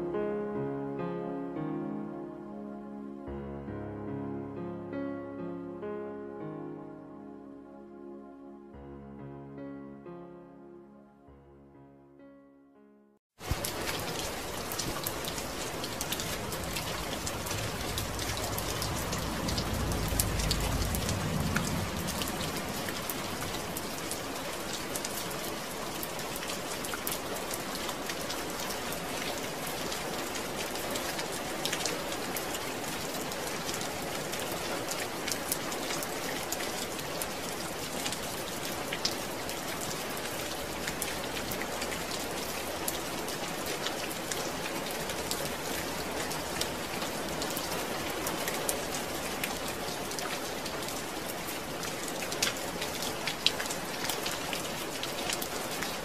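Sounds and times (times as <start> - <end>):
rain falling: 13.4 - 56.0
low rumble: 17.2 - 22.8.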